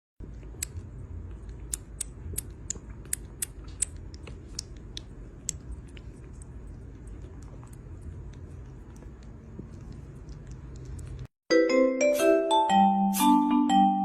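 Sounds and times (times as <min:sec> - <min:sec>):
steady low rumble: 0:00.2 - 0:11.3.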